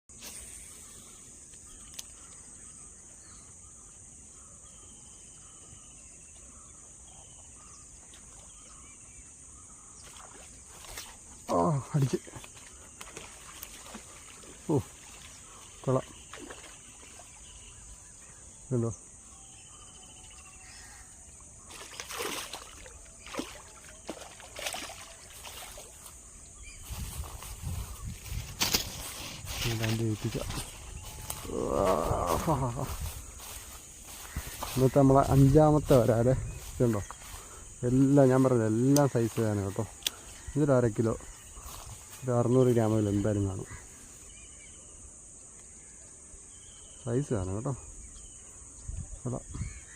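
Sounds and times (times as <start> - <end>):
insects chirring: 0.1 - 49.9
water splashing: 10.0 - 17.8, 21.3 - 26.4.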